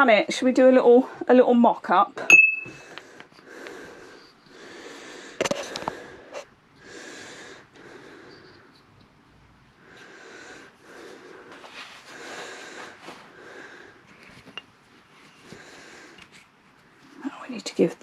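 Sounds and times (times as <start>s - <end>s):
person breathing: 2.7s - 8.9s, 9.7s - 14.2s, 15.3s - 16.4s.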